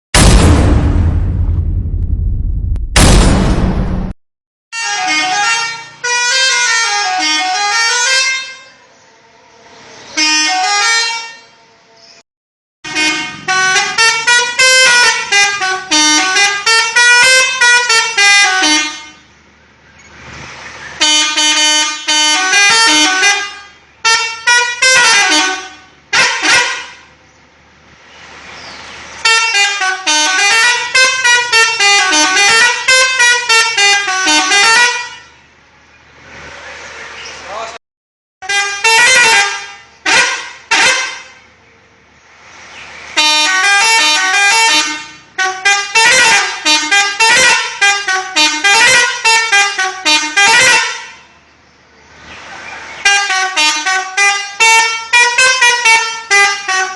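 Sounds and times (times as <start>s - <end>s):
musical air horn melody: 4.7s - 8.8s, 29.2s - 35.3s, 38.4s - 41.4s, 43.2s - 51.2s, 53.0s - 56.9s.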